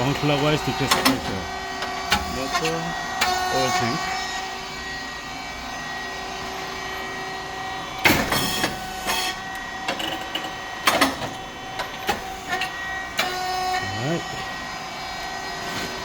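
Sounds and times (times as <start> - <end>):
machine motor humming: 0.0 - 16.0
mechanism clicks and knocks: 0.9 - 2.6, 9.9 - 13.4.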